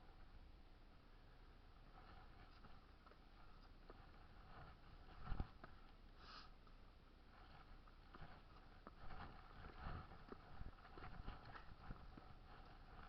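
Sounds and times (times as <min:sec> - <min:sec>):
person sniffing: 0:06.2 - 0:06.5.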